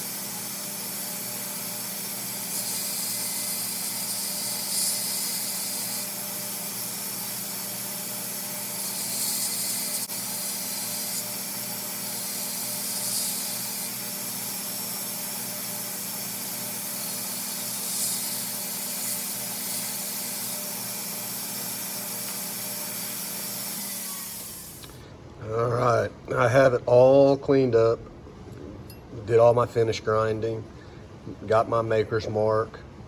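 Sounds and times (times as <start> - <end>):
belt grinder running: 0.0 - 25.0
steel being ground hiss: 0.0 - 25.0.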